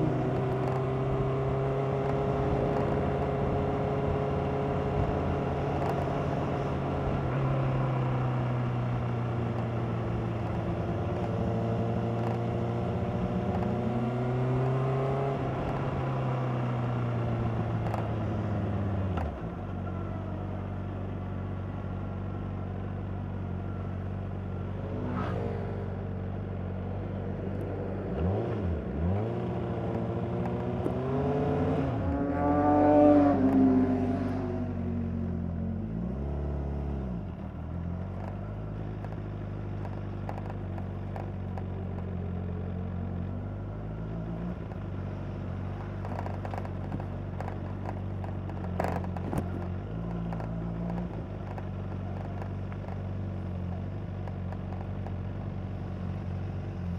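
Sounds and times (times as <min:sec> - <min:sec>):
motorcycle engine revving: 0:27.7 - 0:36.0.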